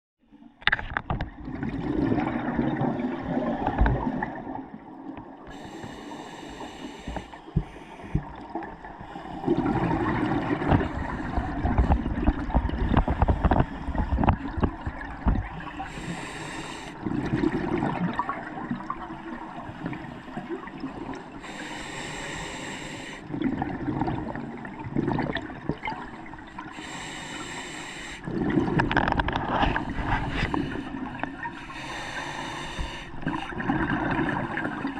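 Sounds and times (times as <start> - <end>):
exhaled bubbles rumbling: 0.9 - 6.1, 7.1 - 21.6, 23.2 - 26.8, 28.2 - 34.9
hissing regulator inhalations: 5.5 - 8.4, 15.8 - 17.1, 21.1 - 23.3, 26.6 - 28.3, 29.6 - 33.7.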